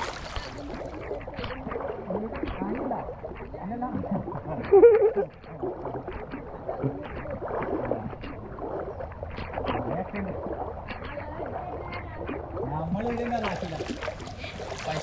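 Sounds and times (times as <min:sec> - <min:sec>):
loud splash: 0:00.0 - 0:02.1
voices talking: 0:00.0 - 0:15.0
water sloshing and splashing: 0:00.0 - 0:15.0.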